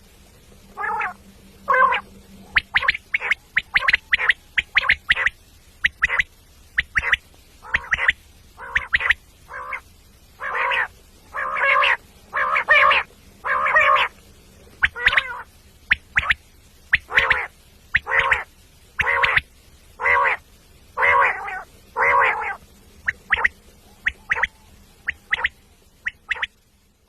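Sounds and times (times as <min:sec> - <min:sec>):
short sharp bird calls: 0:00.8 - 0:09.8, 0:14.8 - 0:20.4
harsh bird squawks: 0:00.8 - 0:14.1, 0:14.8 - 0:20.4, 0:21.0 - 0:26.6.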